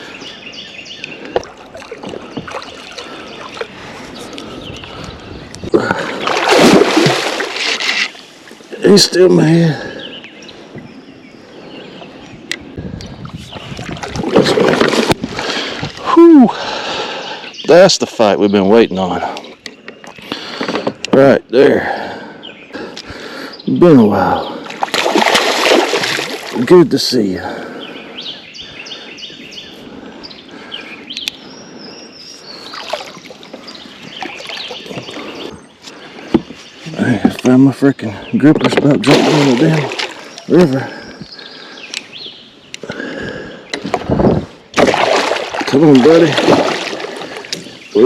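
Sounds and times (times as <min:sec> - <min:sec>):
songbirds chirping: 0:00.0 - 0:48.0
fish thrashing and splashing: 0:06.0 - 0:08.2, 0:13.6 - 0:16.0, 0:24.7 - 0:26.6, 0:32.7 - 0:33.6, 0:39.0 - 0:40.4, 0:44.8 - 0:47.8.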